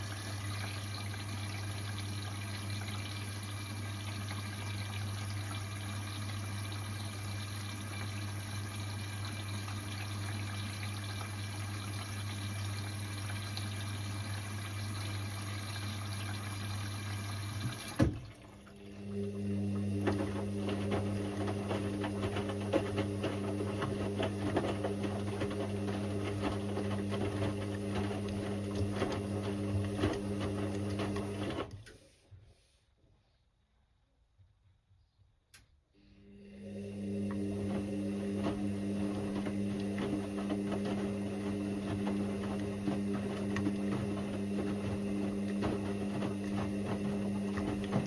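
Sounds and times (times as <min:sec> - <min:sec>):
washing machine filling with water: 0:00.0 - 0:31.8, 0:36.2 - 0:48.0
washing machine clunk: 0:17.6 - 0:18.4, 0:19.8 - 0:31.8, 0:37.4 - 0:48.0
drum motor humming and rattling: 0:20.0 - 0:31.6, 0:37.3 - 0:48.0.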